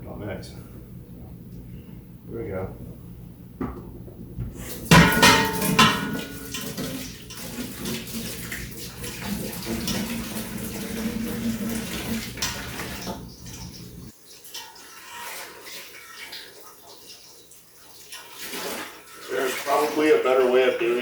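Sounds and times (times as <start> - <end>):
tap water running into pot: 3.6 - 20.3
metal pot clanking: 4.7 - 14.0.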